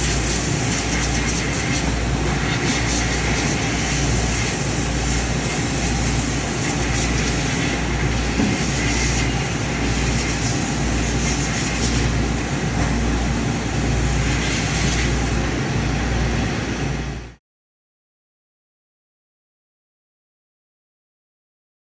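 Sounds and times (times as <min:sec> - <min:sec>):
machinery humming: 0:00.0 - 0:17.3.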